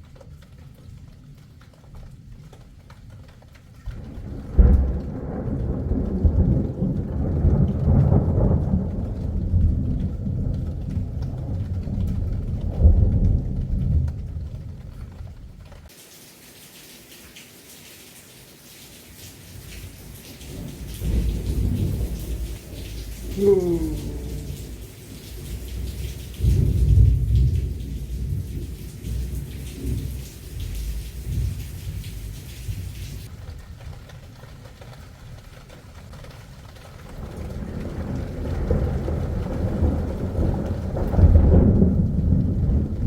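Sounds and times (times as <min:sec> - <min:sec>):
steady rain hiss: 0:00.0 - 0:43.0
thunder rumbling: 0:03.9 - 0:15.9, 0:19.4 - 0:34.3, 0:37.1 - 0:43.0
sharp thunder crack: 0:20.5 - 0:23.4, 0:24.0 - 0:32.2.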